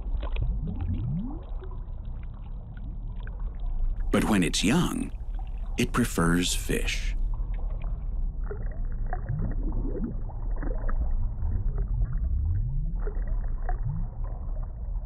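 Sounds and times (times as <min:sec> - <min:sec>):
deep underwater rumble: 0:00.0 - 0:04.1, 0:07.3 - 0:15.0.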